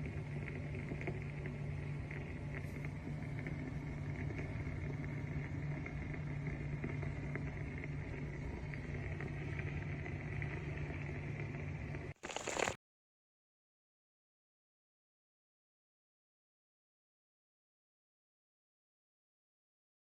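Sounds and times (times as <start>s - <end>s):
crackle and hiss of steam: 12.2s - 12.8s.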